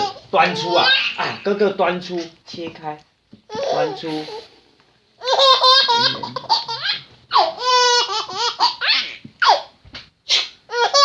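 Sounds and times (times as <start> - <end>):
baby laughing: 0.0 - 1.5, 5.2 - 9.7, 10.3 - 11.0.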